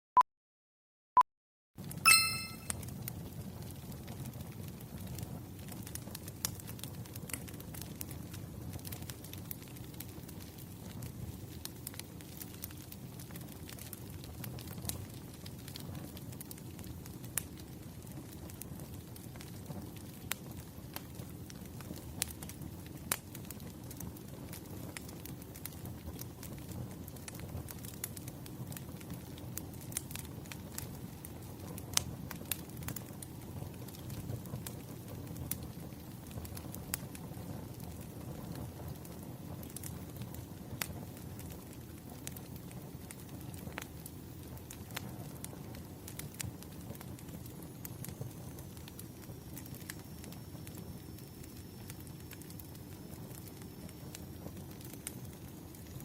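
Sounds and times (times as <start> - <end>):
faint high whistle: 2.1 - 2.7
firewood crackling and popping: 2.7 - 56.0
fire rumbling: 2.8 - 56.0.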